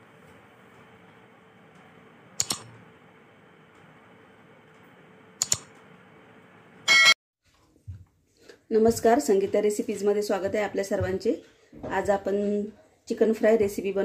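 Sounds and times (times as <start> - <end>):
sharp clicks: 2.4 - 2.7, 5.4 - 5.8
loud ringing burst: 6.8 - 7.2.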